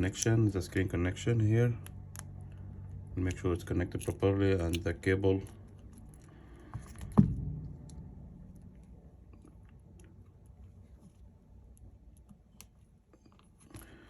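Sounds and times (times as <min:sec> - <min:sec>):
small clicks and taps of parts: 0:03.9 - 0:07.2, 0:09.4 - 0:14.0.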